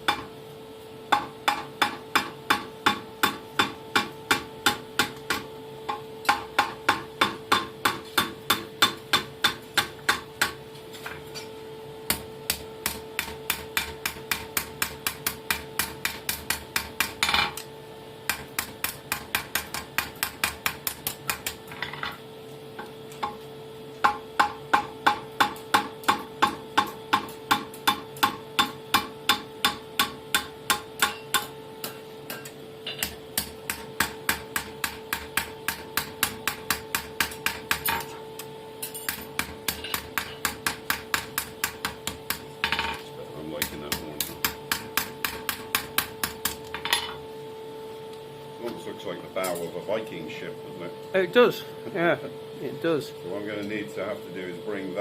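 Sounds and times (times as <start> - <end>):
hammer striking steel on anvil: 0.0 - 0.3, 1.1 - 11.5, 12.1 - 17.6, 24.0 - 38.2, 38.8 - 47.2
steady hum: 0.0 - 55.0.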